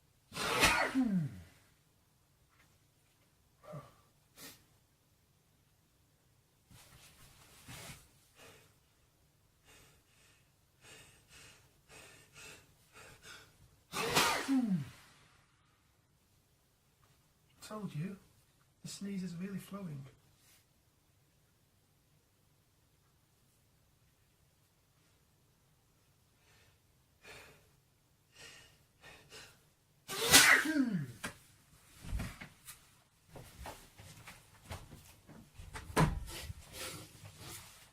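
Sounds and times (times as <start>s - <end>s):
man sneezing loudly: 0.3s - 1.6s, 13.9s - 15.1s, 30.1s - 31.2s.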